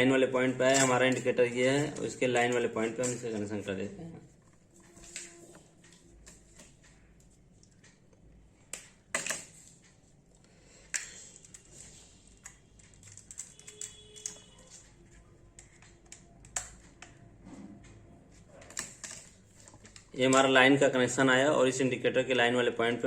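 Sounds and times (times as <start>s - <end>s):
hands clicking wire onto terminal: 10.9s - 17.2s.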